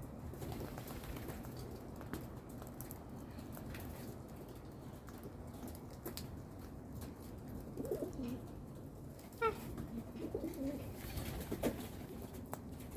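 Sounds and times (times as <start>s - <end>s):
cockatoo murmuring calls: 9.4s - 10.8s.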